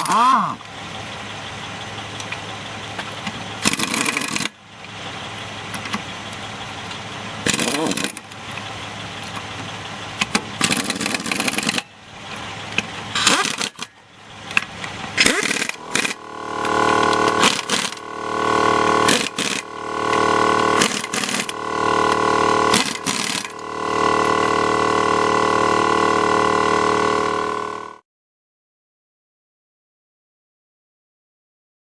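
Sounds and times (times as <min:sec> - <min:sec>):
air impact wrench spinning: 0:03.6 - 0:04.6, 0:07.5 - 0:08.2, 0:10.6 - 0:11.8, 0:13.1 - 0:13.9, 0:15.2 - 0:28.0.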